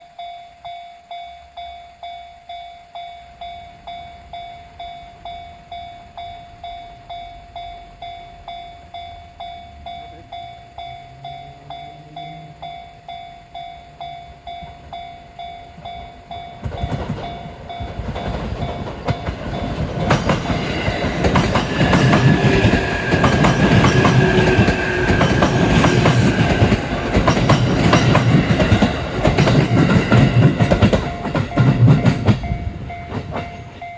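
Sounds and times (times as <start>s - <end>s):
electric train whine: 0.0s - 33.9s
level-crossing warning bell ringing: 0.0s - 33.9s
train wheels clattering over rail joints: 16.4s - 33.9s.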